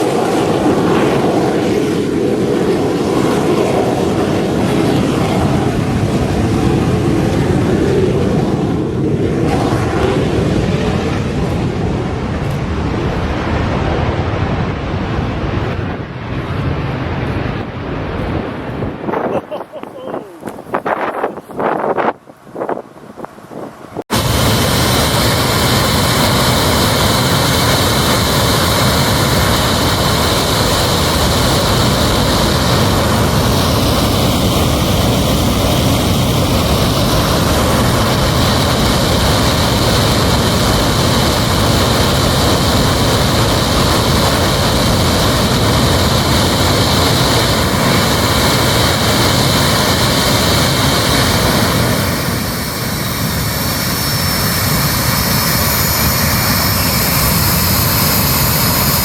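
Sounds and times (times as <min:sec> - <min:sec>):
loud engine running: 0:24.1 - 0:59.0.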